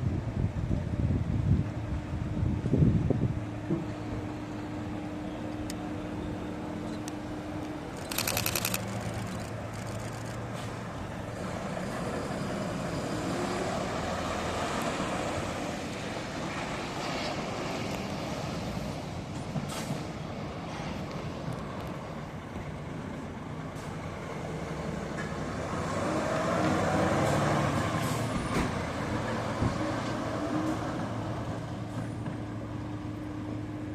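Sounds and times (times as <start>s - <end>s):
truck diesel engine running: 4.1s - 11.6s
air-brake hiss: 19.6s - 20.2s.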